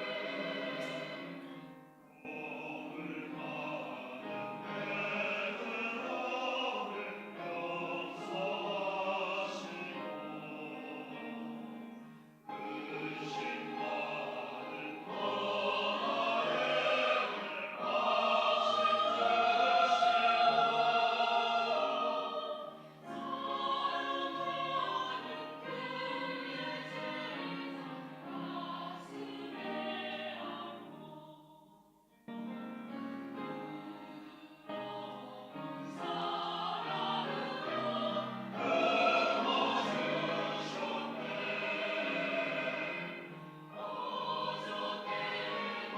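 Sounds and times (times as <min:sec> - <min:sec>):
choir singing: 0:00.0 - 0:32.0, 0:32.8 - 0:45.9.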